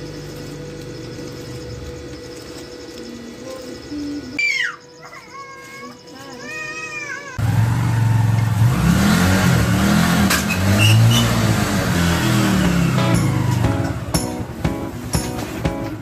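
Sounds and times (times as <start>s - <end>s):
small motorcycle engine revving: 7.4s - 14.4s.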